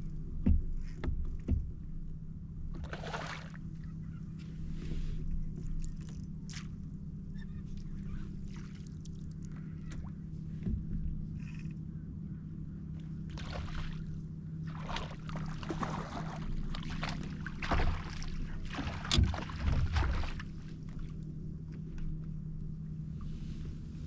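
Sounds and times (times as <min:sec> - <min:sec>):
steady low hum: 0:00.0 - 0:24.0
water splashing around kayak: 0:02.7 - 0:03.9, 0:07.8 - 0:11.4, 0:13.2 - 0:22.0.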